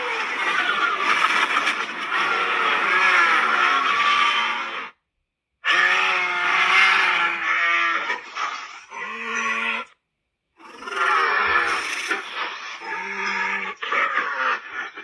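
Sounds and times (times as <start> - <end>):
monster creature calls: 10.6 - 13.6.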